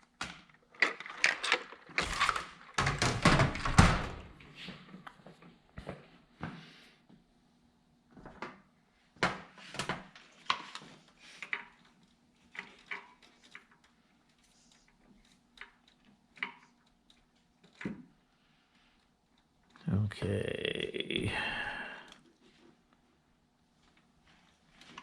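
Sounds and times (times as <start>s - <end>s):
small parts and tools clattering: 0.6s - 3.4s.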